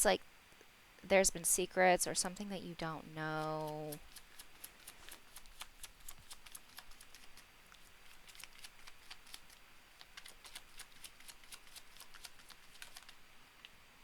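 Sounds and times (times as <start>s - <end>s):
cards being shuffled: 3.6s - 13.3s.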